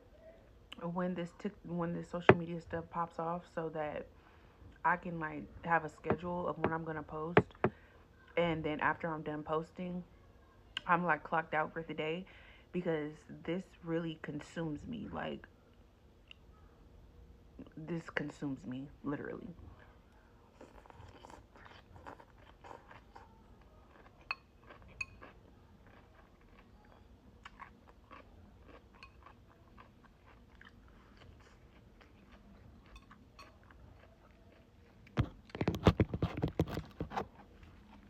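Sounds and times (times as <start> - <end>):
chewing and crunching cucumber: 20.5 - 37.1.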